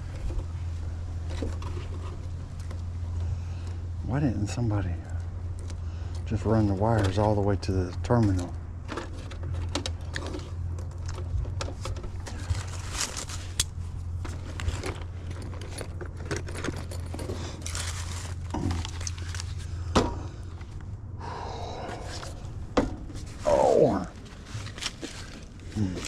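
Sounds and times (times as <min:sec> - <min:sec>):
steady low hum: 0:00.0 - 0:26.0
small metal tools clinking: 0:14.6 - 0:19.4.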